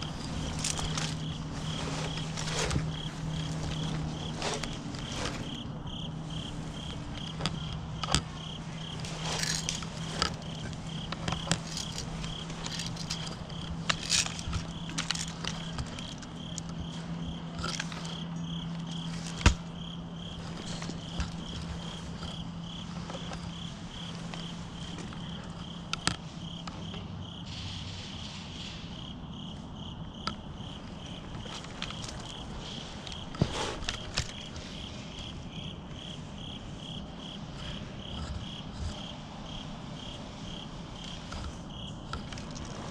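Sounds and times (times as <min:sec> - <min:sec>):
cricket chirping: 0:00.0 - 0:42.9
steady low hum: 0:00.0 - 0:42.9.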